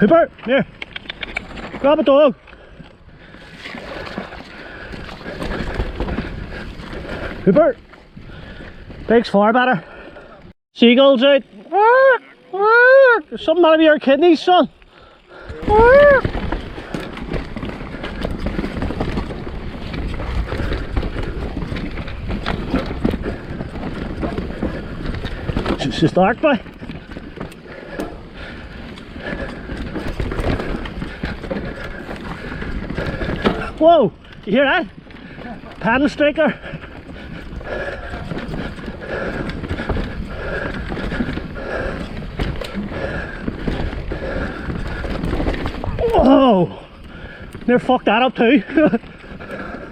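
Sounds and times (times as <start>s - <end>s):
bike rattling over rocks: 0.0s - 10.0s, 13.3s - 49.9s
bike tyre noise: 0.0s - 10.5s, 11.4s - 49.9s
rough steady rush: 12.9s - 49.9s.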